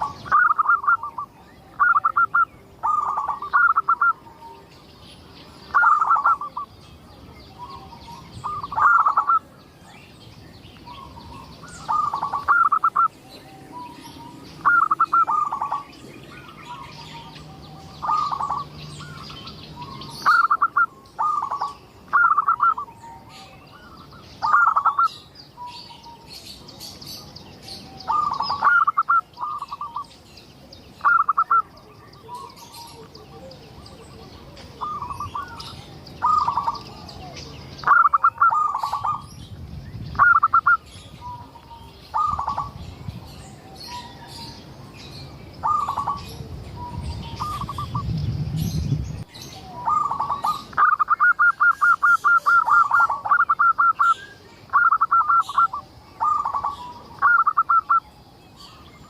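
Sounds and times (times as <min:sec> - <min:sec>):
dove cooing: 0:00.0 - 0:04.6, 0:05.7 - 0:06.7, 0:07.5 - 0:09.5, 0:10.9 - 0:16.0, 0:16.7 - 0:26.3, 0:27.8 - 0:30.0, 0:31.0 - 0:39.3, 0:40.1 - 0:42.8, 0:45.6 - 0:48.1, 0:49.6 - 0:58.1
faint high chirping: 0:00.0 - 0:59.0.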